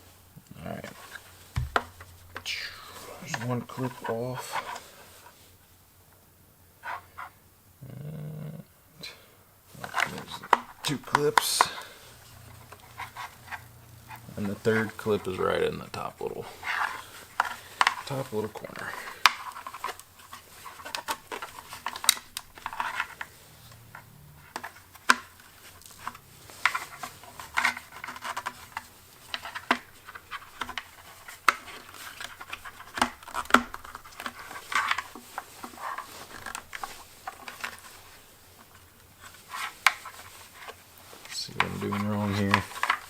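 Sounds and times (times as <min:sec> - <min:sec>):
clicks taps and scrapes on plastic: 0:00.9 - 0:02.5, 0:19.1 - 0:43.0.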